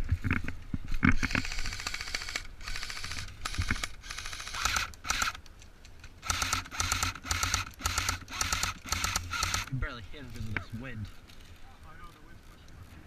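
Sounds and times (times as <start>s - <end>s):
airsoft rifle rapid-fire bursts: 1.2s - 5.4s, 6.2s - 9.7s.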